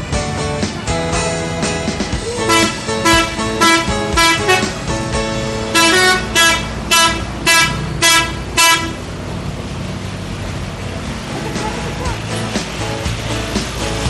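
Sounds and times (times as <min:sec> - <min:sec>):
bus engine: 0:00.0 - 0:14.0
traffic: 0:00.0 - 0:14.0
multi-note musical air horn: 0:02.4 - 0:04.8, 0:05.7 - 0:09.0.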